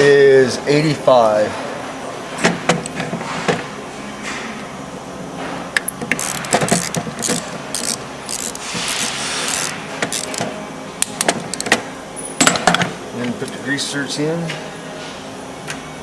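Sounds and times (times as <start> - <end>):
wrench ratcheting: 5.8 - 10.5.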